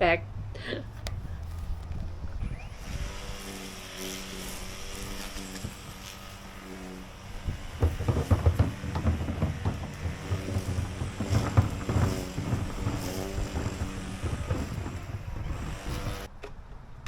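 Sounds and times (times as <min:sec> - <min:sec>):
engine humming: 0:00.6 - 0:16.4
wind buffeting microphone: 0:00.8 - 0:16.7.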